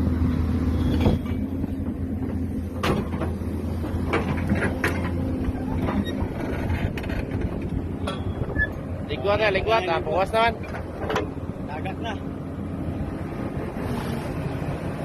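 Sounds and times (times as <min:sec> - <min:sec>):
diesel engine running: 0:00.0 - 0:15.0
metal knocks and clanks: 0:01.0 - 0:08.6, 0:10.6 - 0:11.4.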